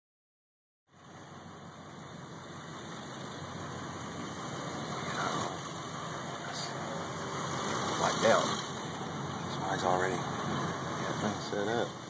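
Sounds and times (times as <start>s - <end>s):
vehicle engine and road noise: 0.9s - 12.0s.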